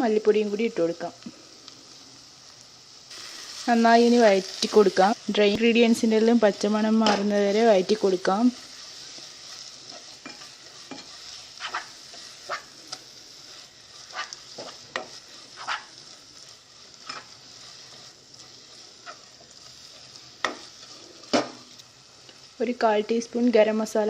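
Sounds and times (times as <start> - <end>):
onions sizzling in oil: 0.0 - 24.0
utensil scraping pan: 9.0 - 16.1.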